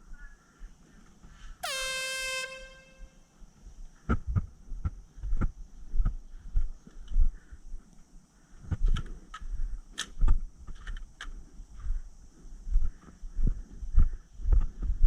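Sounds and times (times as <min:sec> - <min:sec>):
air horn blast: 0:01.6 - 0:03.3.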